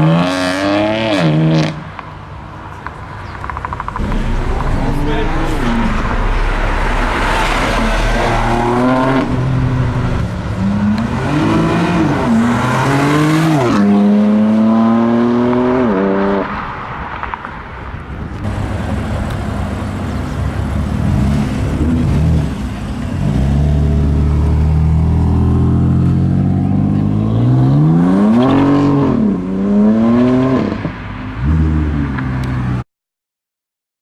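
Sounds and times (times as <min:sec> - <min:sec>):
loud deep engine note: 0:04.0 - 0:12.1
car engine accelerating through gears: 0:04.0 - 0:16.4.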